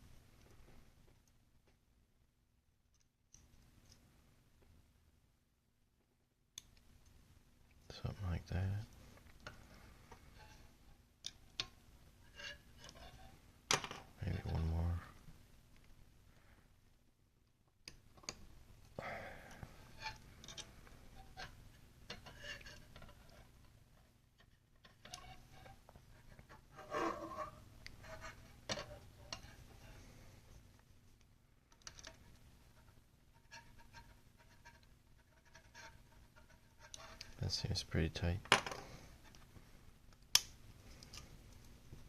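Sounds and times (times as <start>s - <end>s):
small metal parts clicking and scratching: 19.9s - 23.6s, 24.4s - 30.0s, 31.7s - 37.4s.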